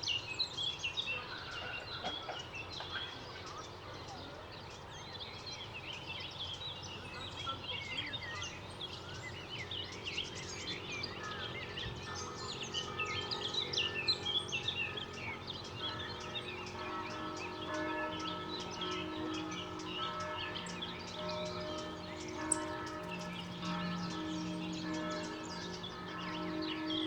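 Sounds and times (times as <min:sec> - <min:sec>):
small birds chirping: 0:00.0 - 0:27.0
distant church bells ringing: 0:00.4 - 0:27.0
low city hum: 0:08.7 - 0:27.0.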